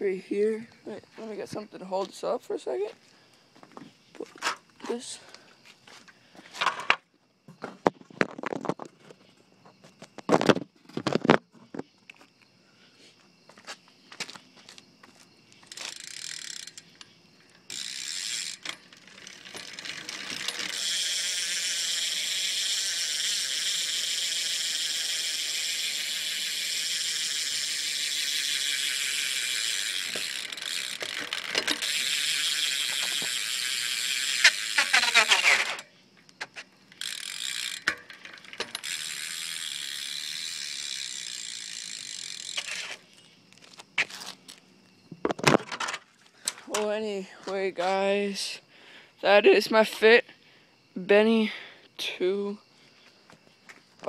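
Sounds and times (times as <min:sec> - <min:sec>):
bike hub ratchet buzzing: 0:15.6 - 0:43.2.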